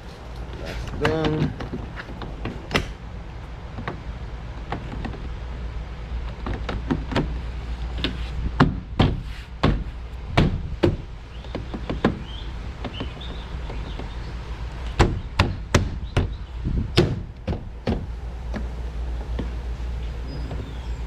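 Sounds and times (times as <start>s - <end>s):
knocks and clicks on car door: 1.0s - 3.0s, 6.3s - 7.4s, 8.0s - 14.2s, 14.9s - 18.7s.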